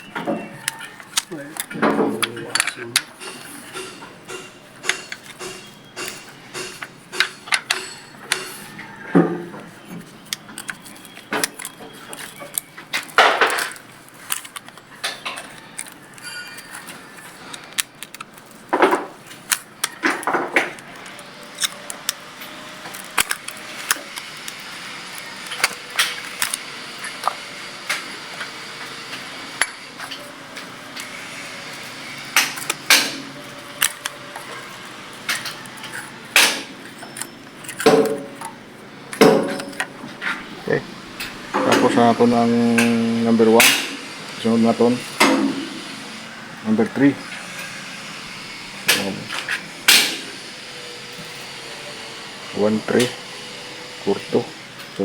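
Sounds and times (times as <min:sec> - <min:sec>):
metal tools clinking on engine: 0:00.0 - 0:09.0, 0:09.8 - 0:18.7.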